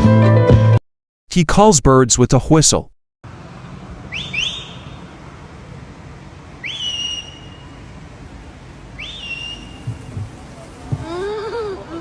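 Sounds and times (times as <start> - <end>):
bird call whistle: 4.1 - 5.1, 6.6 - 7.8, 9.0 - 10.0.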